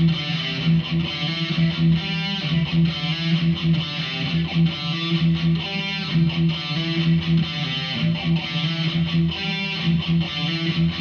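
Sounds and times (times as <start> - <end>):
distorted electric guitar riff: 0.0 - 11.0.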